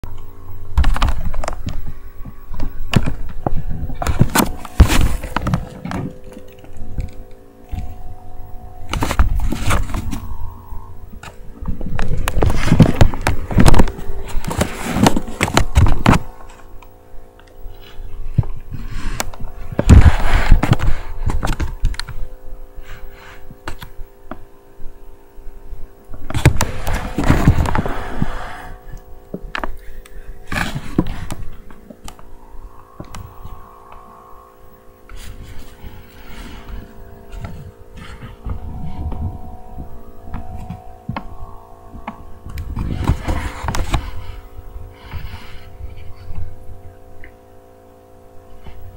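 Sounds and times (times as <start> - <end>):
steady hum: 0.0 - 48.9.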